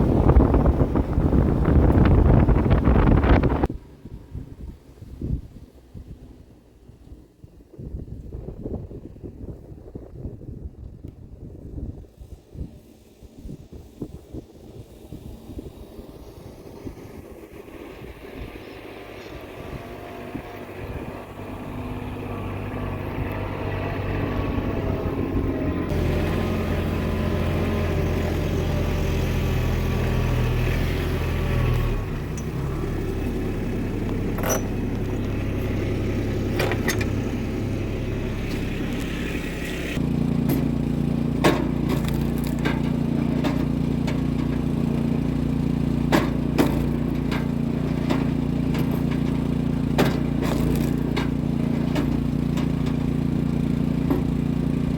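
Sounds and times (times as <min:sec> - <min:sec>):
engine running: 0:00.0 - 0:09.6, 0:11.1 - 0:54.9
sharp clanks and rattles: 0:30.6 - 0:54.9.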